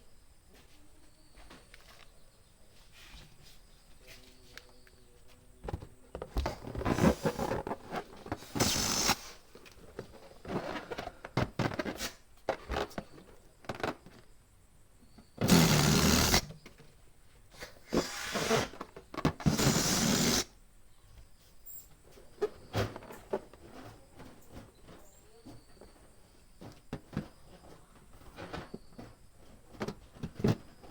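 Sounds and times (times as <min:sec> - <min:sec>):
rustling and handling sounds: 0:00.4 - 0:14.4, 0:21.0 - 0:30.9
balloon pump air bursts: 0:08.4 - 0:09.4, 0:15.4 - 0:16.5, 0:17.9 - 0:18.8, 0:19.4 - 0:20.5.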